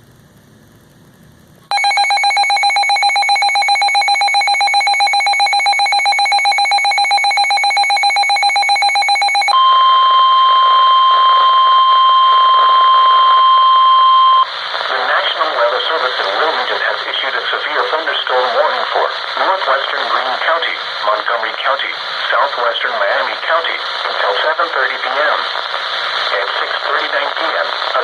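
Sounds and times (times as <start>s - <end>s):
steady single-pitch alarm tone: 1.7s - 14.5s
rapidly pulsing alarm beep: 1.7s - 14.6s.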